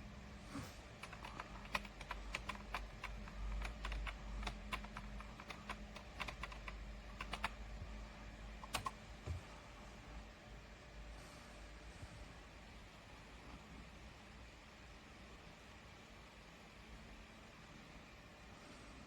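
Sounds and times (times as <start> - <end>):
computer keyboard typing: 1.0 - 7.6, 8.6 - 9.0.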